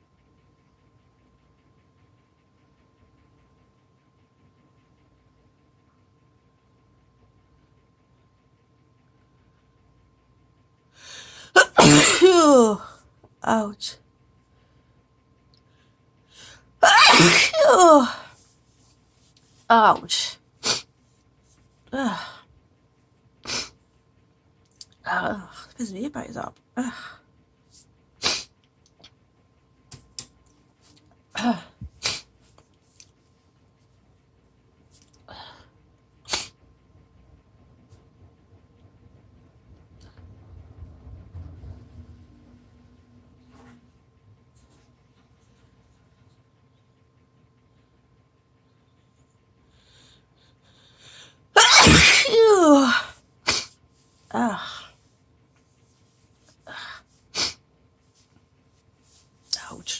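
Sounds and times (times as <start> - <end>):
woman sneezing: 11.6 - 12.8, 16.8 - 18.1, 51.6 - 53.7.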